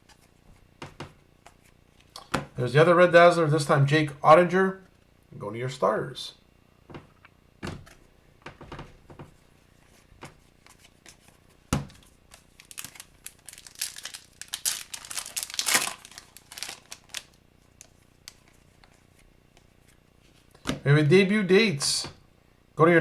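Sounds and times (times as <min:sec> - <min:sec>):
foil wrapper crinkling and tearing: 0:12.3 - 0:18.6.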